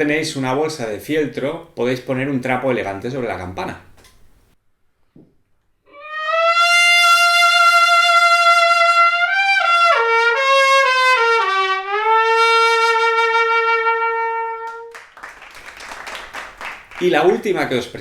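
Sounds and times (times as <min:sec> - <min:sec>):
muted trumpet playing: 0:05.9 - 0:15.0.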